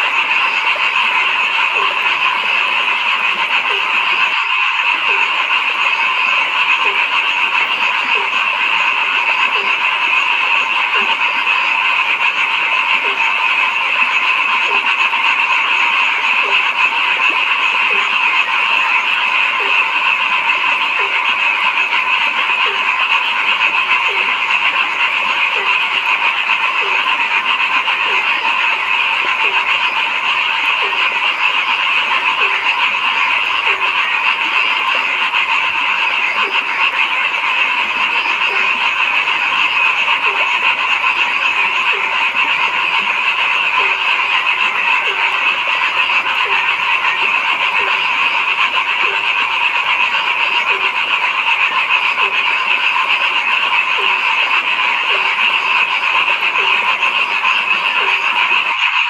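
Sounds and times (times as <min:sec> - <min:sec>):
chorus of frogs calling: 0:00.0 - 0:59.0
deep frog croaking: 0:00.0 - 0:59.0.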